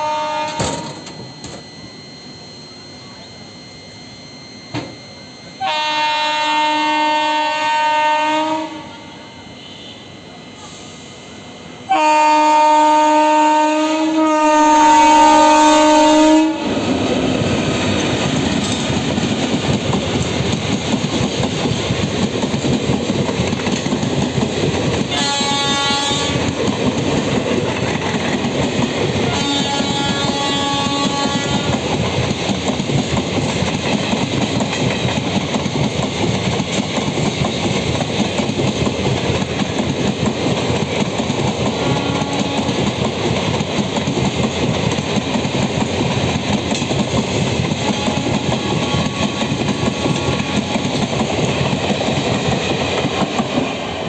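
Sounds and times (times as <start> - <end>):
electric locomotive horn: 0.0 - 17.2, 24.9 - 27.2, 28.8 - 32.2, 41.6 - 43.1, 47.3 - 51.1
train coaches rumbling past: 0.0 - 54.0.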